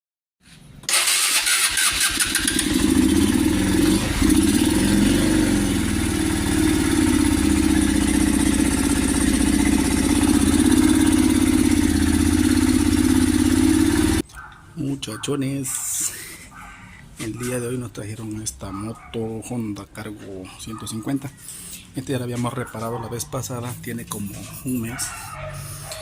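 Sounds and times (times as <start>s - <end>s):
motorcycle engine starting and idling: 0.8s - 14.2s.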